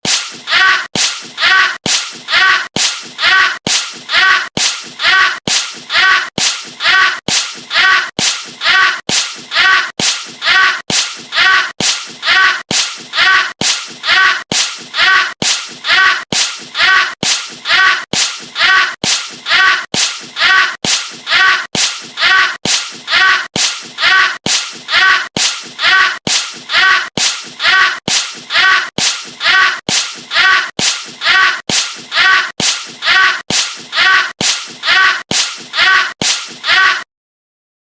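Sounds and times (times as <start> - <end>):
punch sound effect: 7.3 - 24.8, 25.4 - 36.6.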